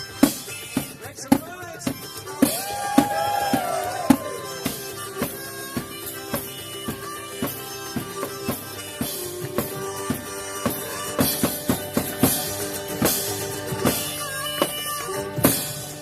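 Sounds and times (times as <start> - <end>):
drum kit beat: 0.0 - 16.0
guitar: 0.0 - 16.0
harmonica: 0.0 - 16.0.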